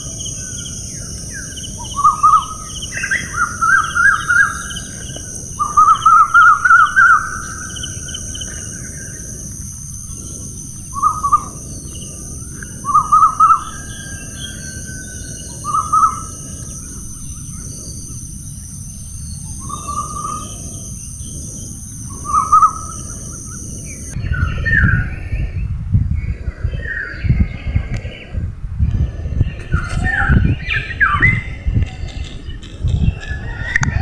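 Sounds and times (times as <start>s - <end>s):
steady high hiss: 0.0s - 24.2s
forest birds calling: 0.0s - 25.6s
gusty wind rumble: 0.0s - 34.0s.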